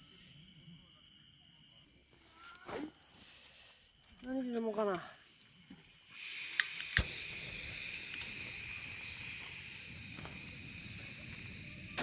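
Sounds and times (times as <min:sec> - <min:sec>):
crickets trilling: 0:04.2 - 0:12.0
sharp clicks: 0:06.5 - 0:07.2.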